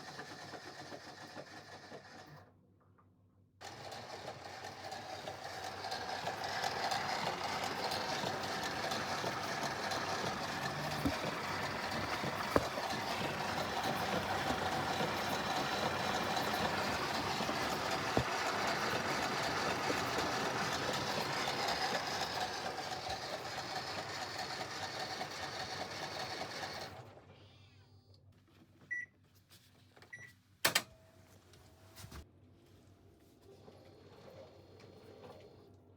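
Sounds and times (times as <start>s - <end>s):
washing machine drum grinding: 5.0s - 26.9s.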